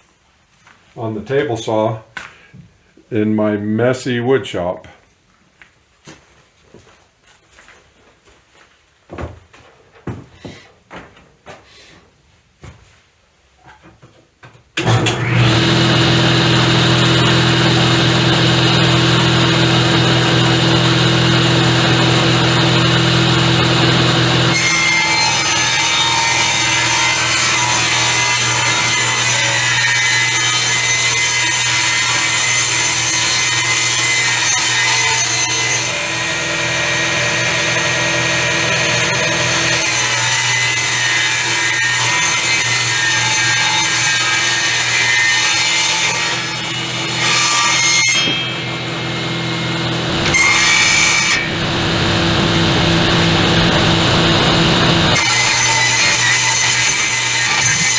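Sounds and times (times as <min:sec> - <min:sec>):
saw motor humming: 0:14.8 - 0:57.9
table saw cutting wood: 0:14.8 - 0:57.9.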